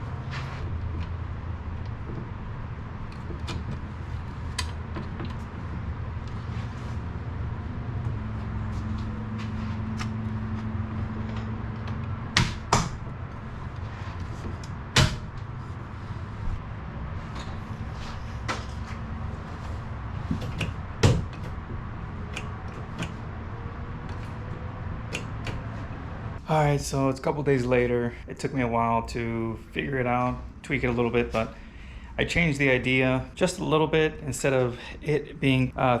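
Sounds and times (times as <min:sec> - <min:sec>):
steady low hum: 0:00.0 - 0:36.0
sharp knocks: 0:12.3 - 0:13.0, 0:14.9 - 0:15.3, 0:20.3 - 0:21.5.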